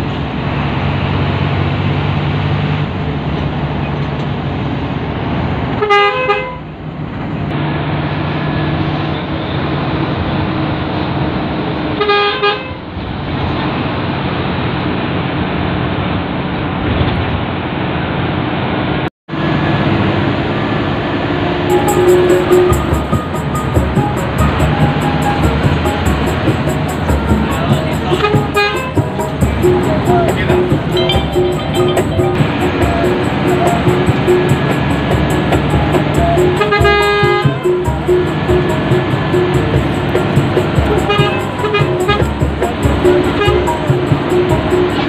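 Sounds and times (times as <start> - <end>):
bus engine and road noise: 0.0 - 45.0
bus horn blasts: 5.7 - 6.7, 12.0 - 12.9, 21.5 - 45.0.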